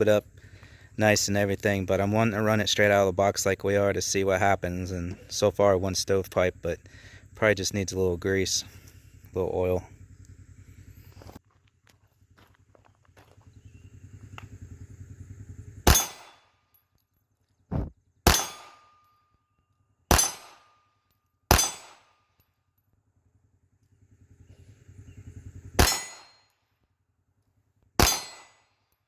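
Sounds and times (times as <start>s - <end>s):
pistol shots: 15.8s - 16.4s, 18.2s - 19.0s, 20.1s - 20.8s, 21.5s - 22.2s, 25.8s - 26.4s, 28.0s - 28.7s
steel targets clanging: 18.3s - 19.1s, 25.8s - 26.4s, 28.0s - 28.7s.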